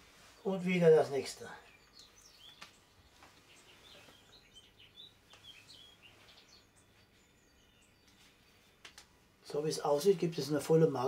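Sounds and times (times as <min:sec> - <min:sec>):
faint bird chirps: 0:01.2 - 0:09.6
soft clicks: 0:08.8 - 0:09.2.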